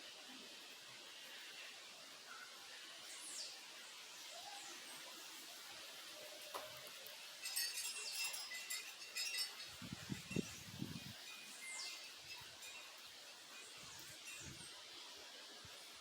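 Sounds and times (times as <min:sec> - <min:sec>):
wind chime tinkling: 0:07.4 - 0:14.7.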